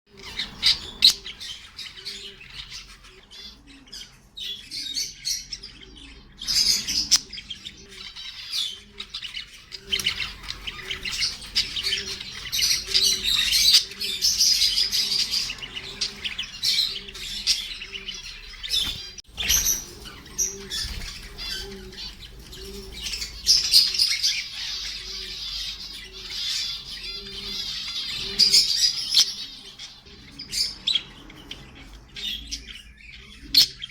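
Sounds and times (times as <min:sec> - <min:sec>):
parrots chirping and squawking: 0:00.1 - 0:33.9
wings flapping: 0:18.7 - 0:23.3.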